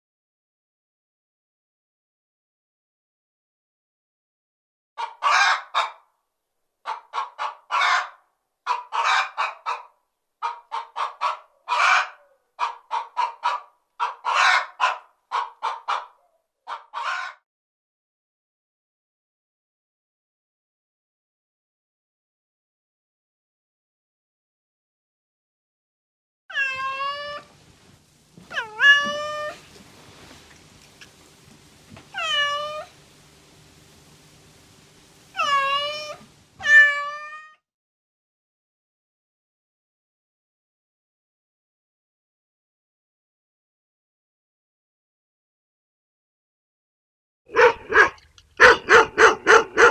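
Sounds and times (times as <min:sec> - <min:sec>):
hen cackling: 0:05.0 - 0:06.0, 0:06.9 - 0:17.4, 0:26.5 - 0:27.5, 0:28.5 - 0:29.7, 0:32.1 - 0:32.9, 0:35.3 - 0:37.6, 0:47.5 - 0:49.9
cat meowing: 0:26.5 - 0:27.5, 0:28.5 - 0:29.7, 0:32.1 - 0:32.9, 0:35.3 - 0:37.6.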